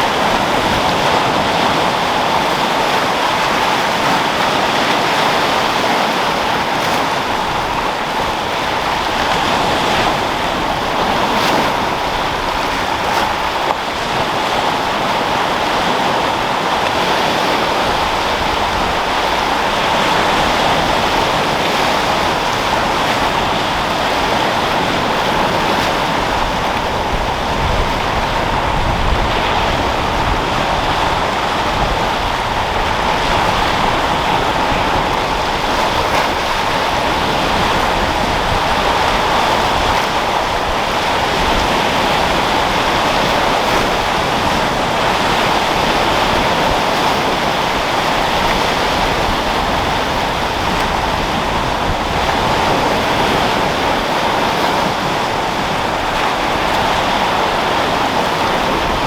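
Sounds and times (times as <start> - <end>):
sea surf washing onto shore: 0.0 - 59.0
wind rumble: 17.4 - 54.3.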